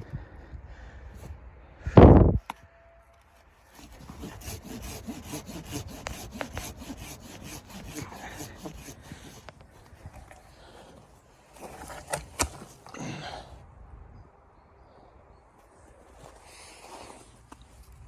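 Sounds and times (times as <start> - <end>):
rhythmic rasping strokes: 3.8 - 9.5.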